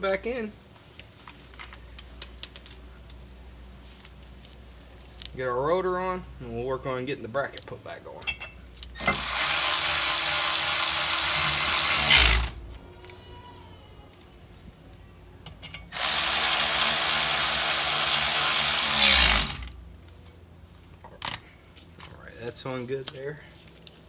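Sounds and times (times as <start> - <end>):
cordless power driver running: 9.0 - 12.7, 15.9 - 19.8.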